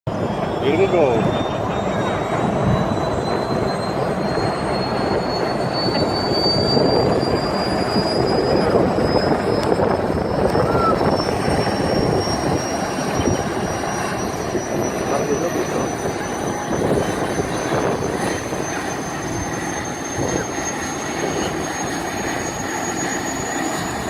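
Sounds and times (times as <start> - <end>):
helicopter engine and rotor: 0.1 - 24.0
high turbine whine rising: 0.1 - 24.0.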